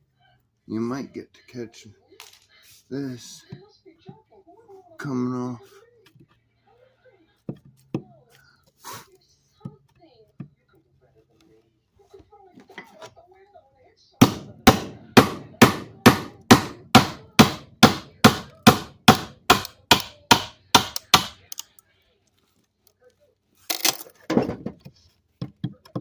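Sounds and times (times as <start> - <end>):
chisel hammered into wood: 14.2 - 21.6.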